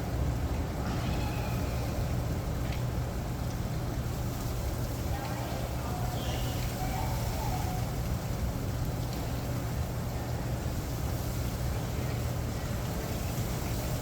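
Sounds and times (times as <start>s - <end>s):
heavy rain hiss: 0.0s - 14.0s.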